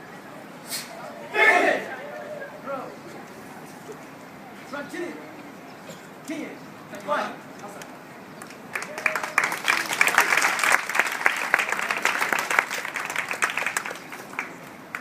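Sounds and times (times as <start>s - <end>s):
audience clapping: 8.4s - 15.0s.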